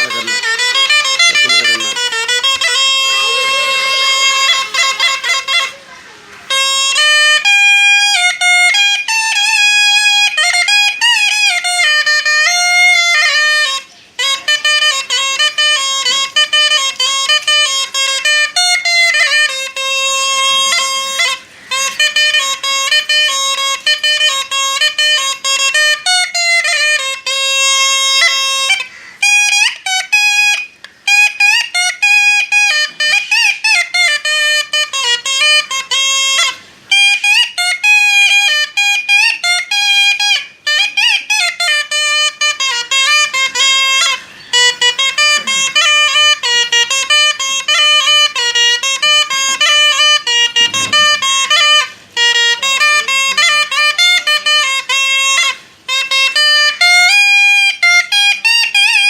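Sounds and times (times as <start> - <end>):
reedy brass-like melody: 0.0 - 5.8, 32.7 - 58.4.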